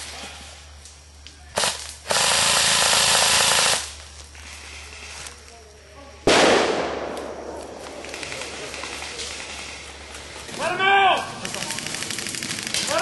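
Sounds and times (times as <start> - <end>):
airsoft gun automatic fire: 1.6 - 3.9, 6.3 - 9.6, 11.4 - 13.0.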